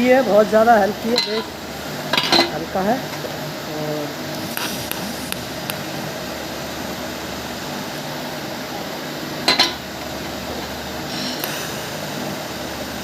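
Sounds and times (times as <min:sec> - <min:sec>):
welding machine hum and hiss: 0:00.0 - 0:13.0
sharp welding crackle: 0:04.2 - 0:08.1.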